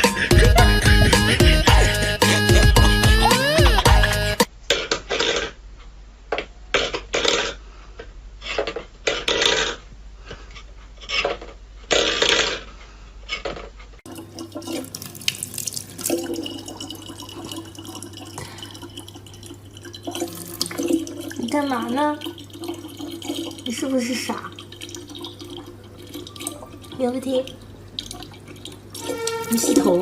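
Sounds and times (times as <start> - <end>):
water running steadily: 14.1 - 30.0
water splashing: 14.1 - 30.0.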